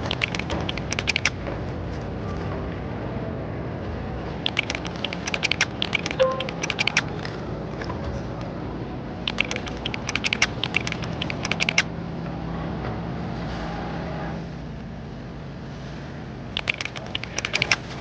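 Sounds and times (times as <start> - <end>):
quick sharp clicks and taps: 0.0 - 1.4, 4.4 - 7.3, 9.3 - 11.9, 16.6 - 18.0.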